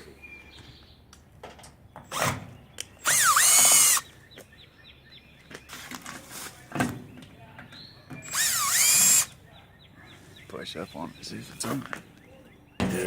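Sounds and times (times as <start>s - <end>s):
cordless drill spinning: 3.0s - 4.0s, 8.2s - 9.3s.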